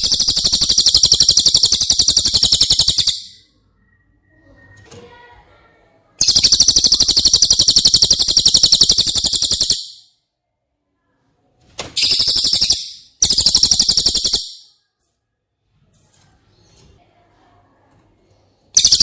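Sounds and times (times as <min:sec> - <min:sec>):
bird singing high trills: 0:00.0 - 0:03.5, 0:06.2 - 0:10.1, 0:12.0 - 0:14.7, 0:18.8 - 0:19.0.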